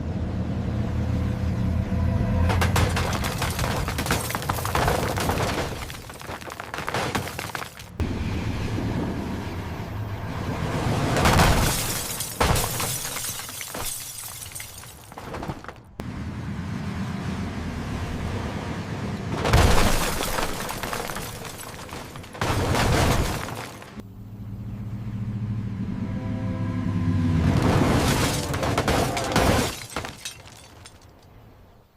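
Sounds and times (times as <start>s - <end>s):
car crashes: 2.3s - 8.0s, 11.0s - 15.8s, 19.3s - 24.0s, 27.4s - 31.2s
glass shattering: 2.6s - 7.9s, 11.3s - 15.3s, 19.5s - 23.9s, 27.9s - 31.3s.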